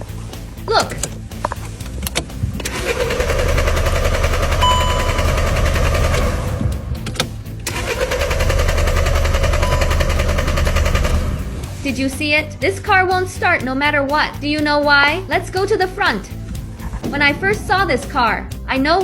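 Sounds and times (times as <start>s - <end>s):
starter motor cranking engine: 1.0s - 11.8s.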